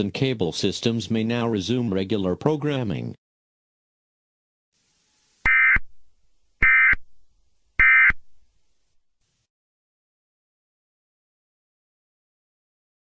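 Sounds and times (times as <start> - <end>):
buzzy digital data bursts: 4.8 - 5.8.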